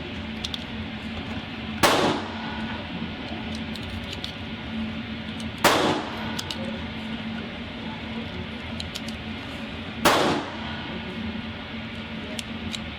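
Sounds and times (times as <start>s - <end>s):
rounds clicking into magazine: 0.4s - 0.7s, 3.5s - 4.4s, 5.3s - 6.7s, 8.8s - 9.2s
loud gunshots: 1.8s - 2.6s, 5.6s - 6.4s, 10.0s - 10.8s.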